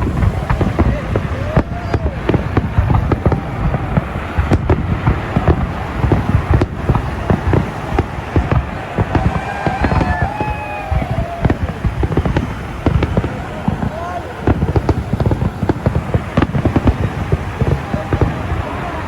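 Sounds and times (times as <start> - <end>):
deep rumble: 0.0 - 19.0
fireworks bangs and crackles: 0.0 - 19.0
fireworks whistling: 0.0 - 19.0.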